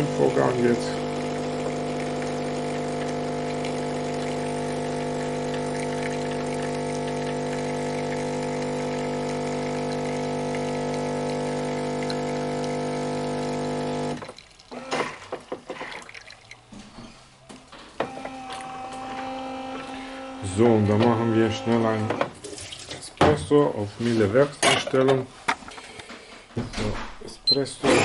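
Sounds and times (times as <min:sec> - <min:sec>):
coffee machine pump humming: 0:00.0 - 0:16.8, 0:18.0 - 0:22.3
water flowing: 0:00.0 - 0:16.9, 0:18.0 - 0:23.8.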